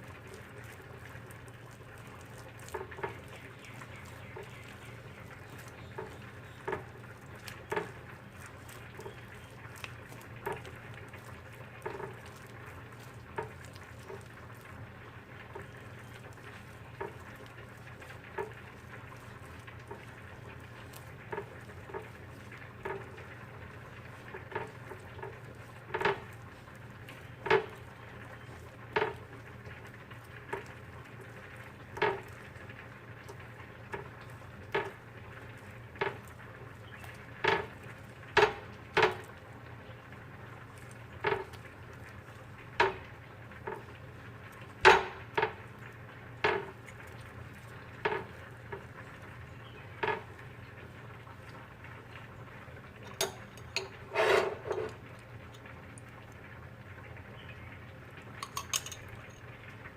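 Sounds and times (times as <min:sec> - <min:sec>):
utensils clinking against dishes: 0:53.1 - 0:55.0, 0:58.4 - 0:59.1.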